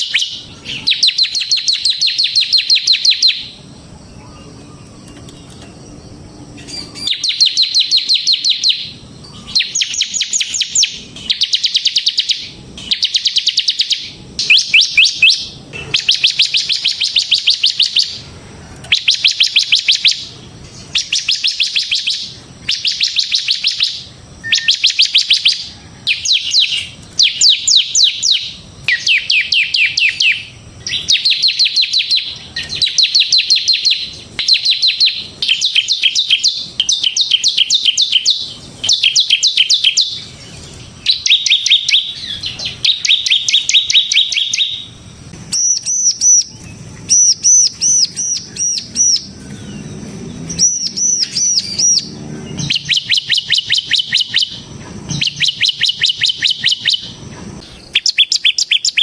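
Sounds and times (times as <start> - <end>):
bird drill-like trills: 0.0 - 59.0
bird whistled notes: 0.0 - 59.0.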